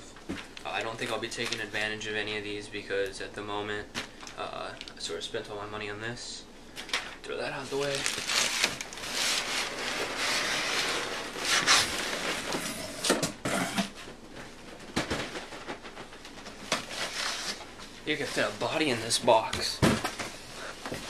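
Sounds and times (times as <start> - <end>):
paper and cardboard rustling: 0.3 - 2.0, 7.5 - 12.8, 14.4 - 21.0.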